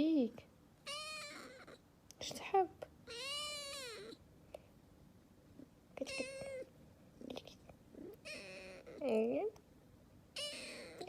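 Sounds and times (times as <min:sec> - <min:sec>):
kitten meowing: 0:00.8 - 0:01.8, 0:03.1 - 0:04.2, 0:06.0 - 0:06.7, 0:08.2 - 0:09.0, 0:10.4 - 0:11.0.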